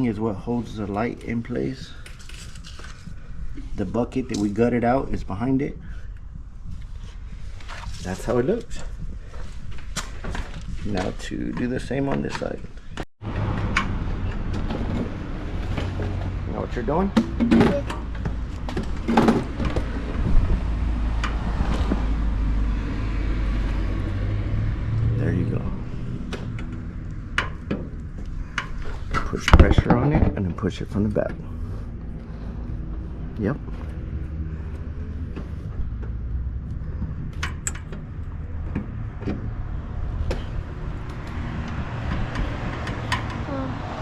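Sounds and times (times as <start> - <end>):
steady low rumble: 0.0 - 11.2, 18.0 - 43.8
clicks and knocks of handled parts: 35.3 - 39.6, 40.2 - 43.5.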